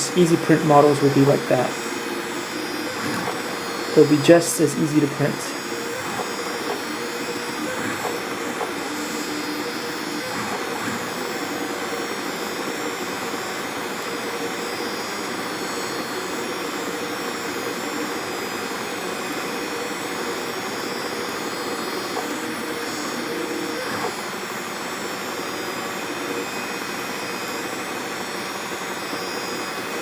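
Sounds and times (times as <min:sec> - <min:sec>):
cooling fans humming: 0:00.0 - 0:26.4
three d printer whirring: 0:00.0 - 0:30.0.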